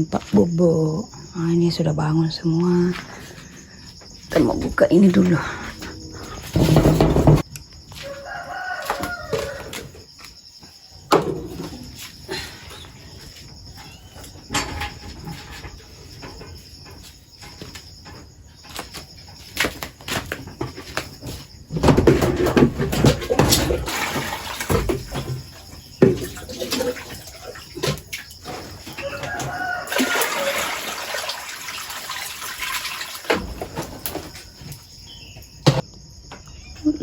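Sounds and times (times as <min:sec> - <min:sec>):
knocks and rattles: 0:06.3 - 0:07.6, 0:13.6 - 0:29.6.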